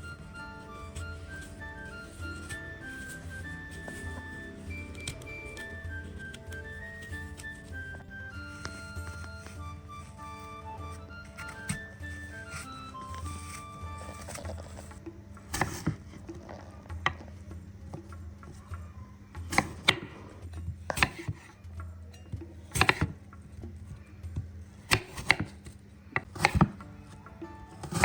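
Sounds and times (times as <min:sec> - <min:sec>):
knife chopping on cutting board: 0:11.4 - 0:16.2, 0:19.5 - 0:20.3, 0:20.9 - 0:21.5, 0:22.7 - 0:23.2, 0:24.8 - 0:26.8, 0:27.8 - 0:28.0.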